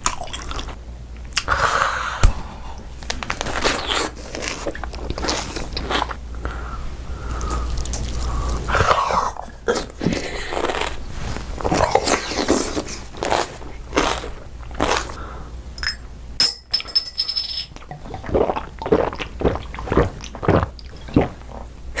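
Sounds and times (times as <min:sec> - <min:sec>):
crunchy biting and chewing: 0:03.2 - 0:06.2, 0:07.4 - 0:15.2.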